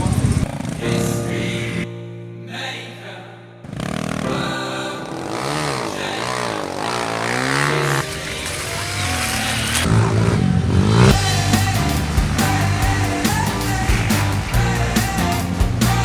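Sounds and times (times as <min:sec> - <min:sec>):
music: 0:00.8 - 0:03.7, 0:04.3 - 0:09.2, 0:11.1 - 0:16.0
off-road vehicle engine revving: 0:03.7 - 0:04.3, 0:05.1 - 0:16.0.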